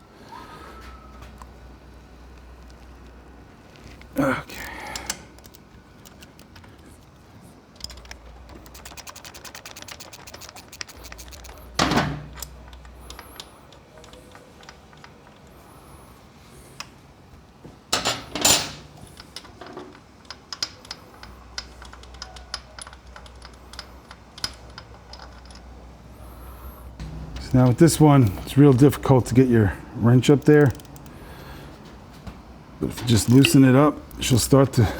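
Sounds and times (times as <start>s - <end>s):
metal tools ticking: 4.5s - 15.7s, 18.0s - 26.2s, 27.0s - 31.6s, 32.8s - 34.9s
socket ratchet clicking: 4.6s - 7.2s, 7.8s - 15.5s, 30.2s - 31.4s, 33.0s - 34.6s.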